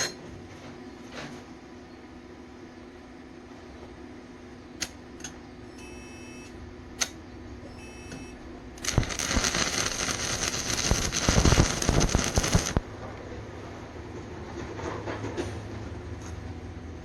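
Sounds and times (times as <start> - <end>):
welding arc crackling: 8.8 - 12.9.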